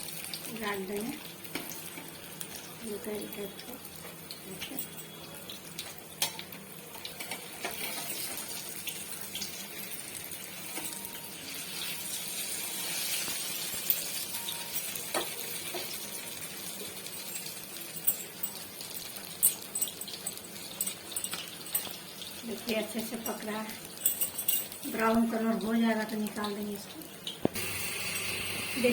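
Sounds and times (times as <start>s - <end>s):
food sizzling in hot oil: 0.0s - 28.9s.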